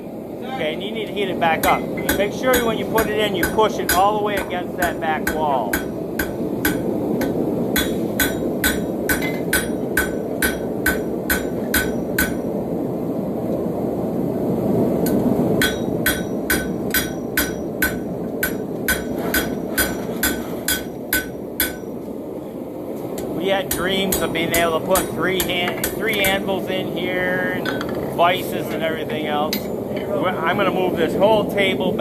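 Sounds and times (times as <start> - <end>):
gas forge roaring: 0.0 - 32.0
hammer striking hot steel on anvil: 1.6 - 12.5, 15.0 - 22.0, 23.2 - 26.5, 28.7 - 30.1.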